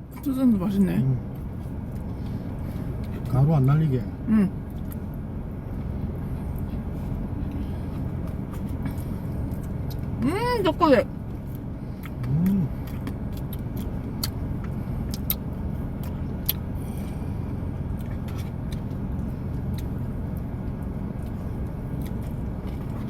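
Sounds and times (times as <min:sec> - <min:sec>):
low rumble: 0:00.0 - 0:23.0
chewing: 0:05.8 - 0:10.2, 0:11.4 - 0:17.2, 0:17.9 - 0:23.0
utensil and mouth clicks: 0:12.0 - 0:14.4
person humming: 0:12.2 - 0:12.8.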